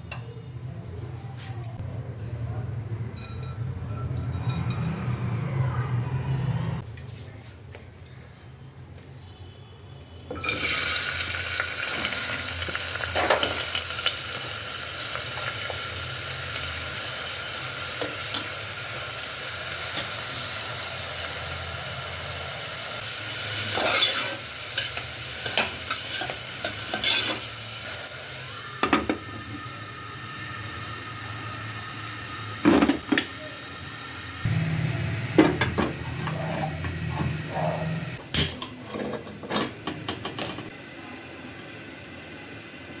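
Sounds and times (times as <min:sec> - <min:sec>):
food sizzling in hot oil: 0:10.4 - 0:34.4
spatula scraping a pan: 0:23.6 - 0:24.9, 0:35.6 - 0:38.2.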